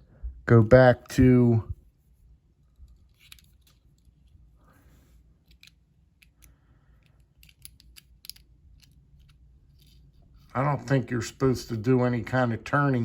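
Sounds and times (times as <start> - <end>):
lock pick clicking and scraping: 5.4 - 10.1.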